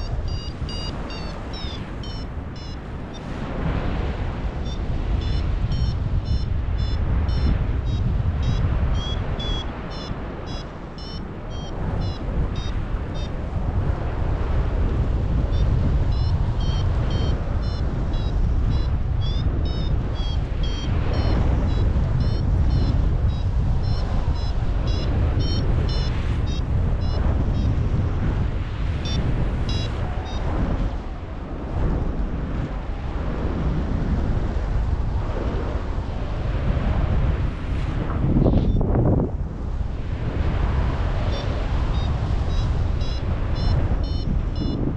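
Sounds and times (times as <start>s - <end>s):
variometer beeping: 0.0s - 3.3s, 4.6s - 13.3s, 15.6s - 27.7s, 29.0s - 30.5s, 41.3s - 44.9s
wind rushing over microphone: 0.0s - 44.9s.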